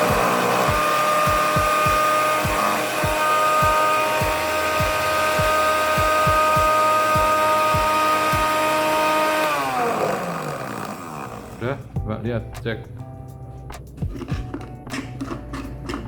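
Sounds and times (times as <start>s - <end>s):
blender motor whining: 0.0s - 11.9s
low thuds: 0.1s - 8.6s.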